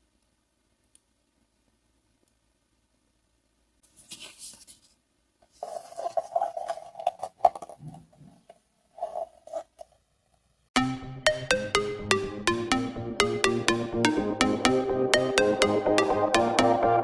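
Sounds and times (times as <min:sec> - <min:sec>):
scratchy rustle: 0:03.8 - 0:10.0.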